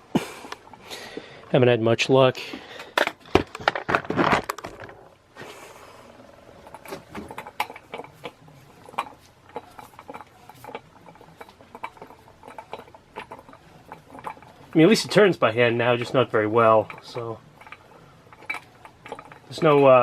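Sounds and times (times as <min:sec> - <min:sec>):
fan motor clicks and knocks: 0:06.6 - 0:20.0.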